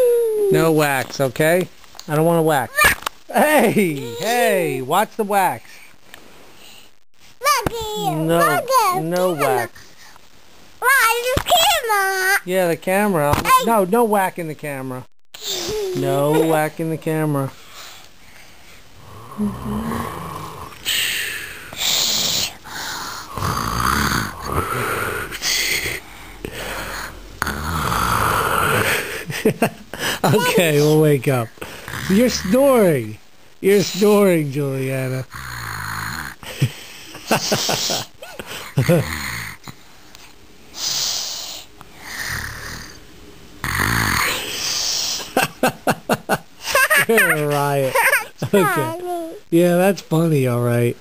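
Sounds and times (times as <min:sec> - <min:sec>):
girl snoring playfully: 0:07.4 - 0:09.7, 0:15.4 - 0:16.5, 0:19.0 - 0:29.3, 0:35.3 - 0:36.6, 0:38.0 - 0:39.8, 0:40.8 - 0:43.0, 0:43.6 - 0:45.2, 0:48.1 - 0:49.4
hissy breaths: 0:20.7 - 0:23.6, 0:39.7 - 0:42.5, 0:44.3 - 0:45.4.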